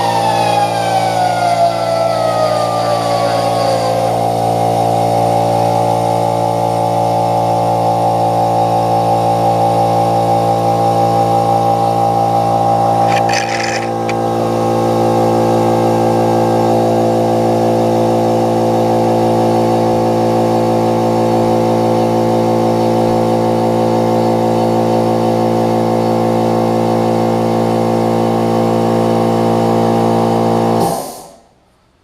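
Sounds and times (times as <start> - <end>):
electric power tool motor humming: 13.0 - 14.3.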